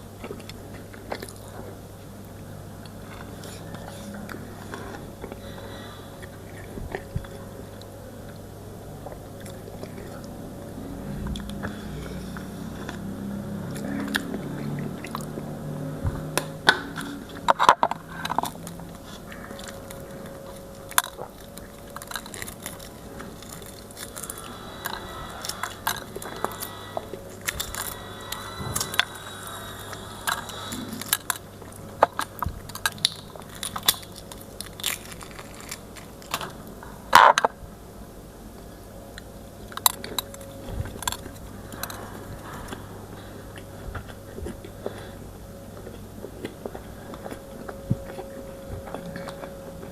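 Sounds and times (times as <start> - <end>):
person chewing food: 0.0 - 37.6, 38.5 - 49.9
steady low hum: 0.0 - 49.9.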